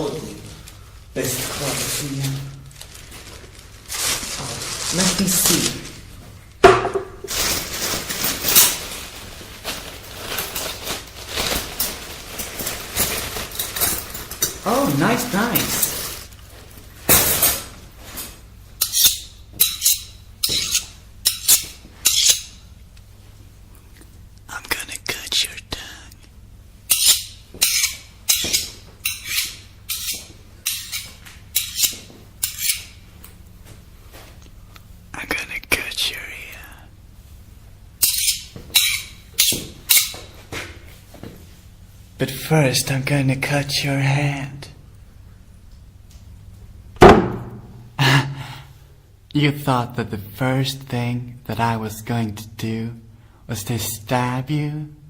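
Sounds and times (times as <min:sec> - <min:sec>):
tools being handled: 0:06.9 - 0:09.0, 0:09.6 - 0:16.4, 0:17.1 - 0:22.6, 0:26.9 - 0:33.0, 0:38.0 - 0:40.3
metal blade scraping: 0:18.8 - 0:22.6, 0:26.9 - 0:33.0, 0:38.0 - 0:40.1.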